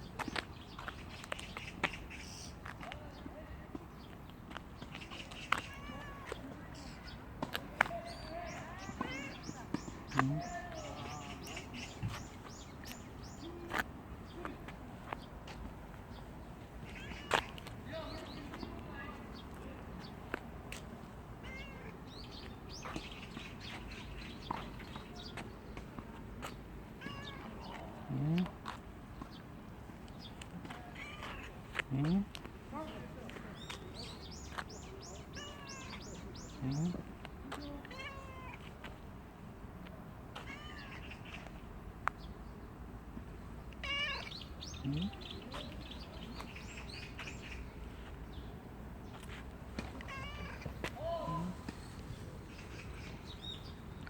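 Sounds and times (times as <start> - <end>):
cat meowing: 5.6 - 7.0, 8.8 - 9.5, 16.9 - 17.5, 21.4 - 22.0, 27.0 - 27.8, 30.9 - 31.6, 35.3 - 36.0, 37.6 - 38.6, 40.4 - 41.5, 43.8 - 45.1, 50.0 - 50.7.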